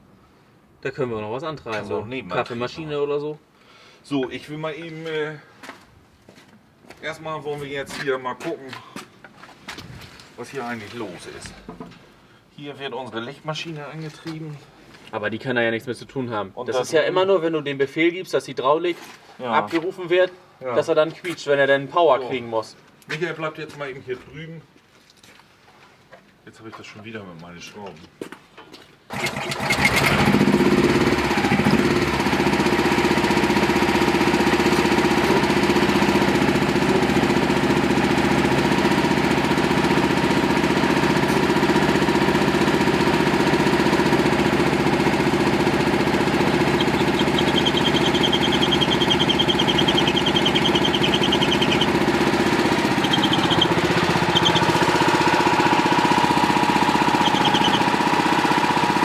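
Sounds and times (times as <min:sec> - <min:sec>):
engine starting and running: 0:29.1 - 0:59.0
high pulsing squeal: 0:46.2 - 0:55.1, 0:56.9 - 0:58.0.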